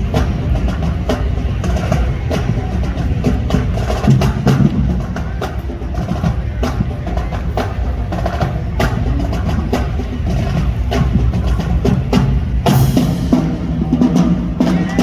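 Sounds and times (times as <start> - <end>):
live band music: 0.0 - 15.0
sharp percussion hits: 0.0 - 15.0.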